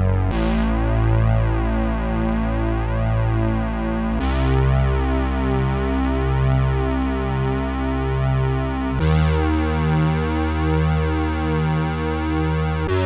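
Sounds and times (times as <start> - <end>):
synthesizer pulsing bass notes: 0.0 - 13.0.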